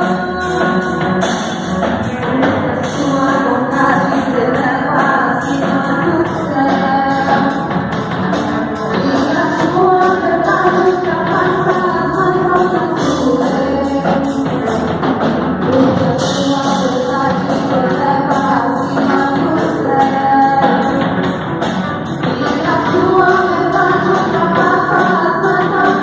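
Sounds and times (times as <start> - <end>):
voices singing gospel song: 0.0 - 7.7, 8.8 - 14.9, 22.2 - 26.0
band accompaniment: 0.0 - 26.0.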